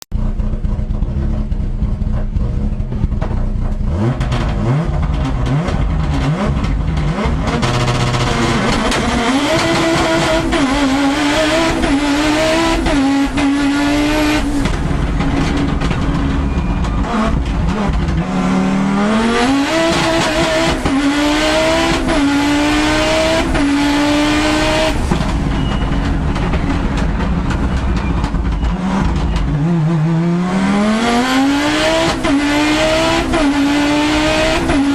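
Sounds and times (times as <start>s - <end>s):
rally car engine accelerating: 0.1s - 34.9s.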